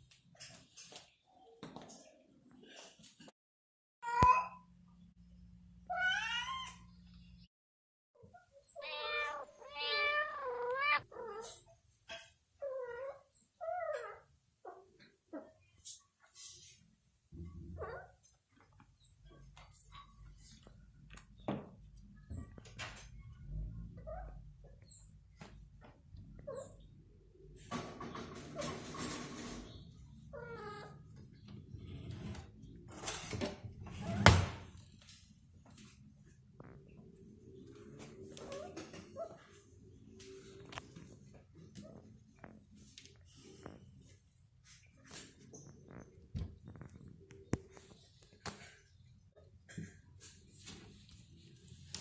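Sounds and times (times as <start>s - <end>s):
cat meowing: 8.8s - 11.6s.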